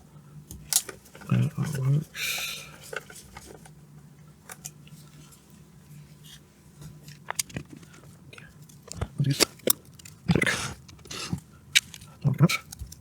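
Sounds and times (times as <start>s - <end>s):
small parts clicking: 8.6s - 13.0s.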